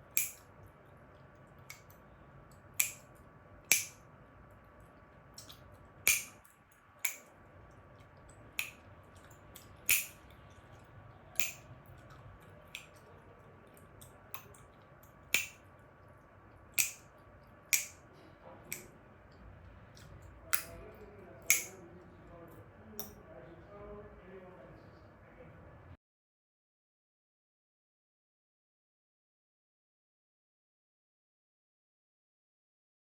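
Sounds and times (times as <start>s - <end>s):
chewing gum snapping: 4.8s - 15.8s, 16.5s - 18.0s, 18.7s - 20.8s, 21.5s - 21.8s.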